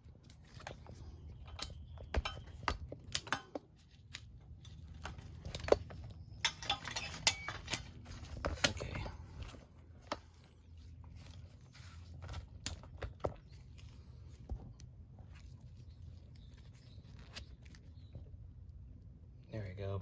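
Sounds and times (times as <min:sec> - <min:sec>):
hard parts clicking and clinking: 0:00.6 - 0:10.4.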